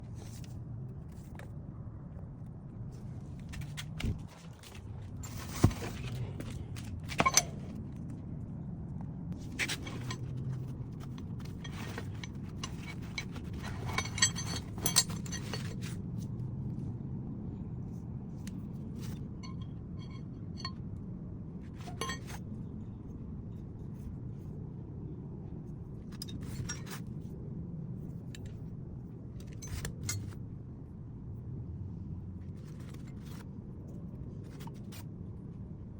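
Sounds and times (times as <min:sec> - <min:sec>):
steady low hum: 0:00.0 - 0:35.9
metal tools clinking: 0:07.1 - 0:07.8, 0:09.6 - 0:16.0, 0:19.0 - 0:20.8, 0:21.8 - 0:22.4, 0:29.5 - 0:30.4.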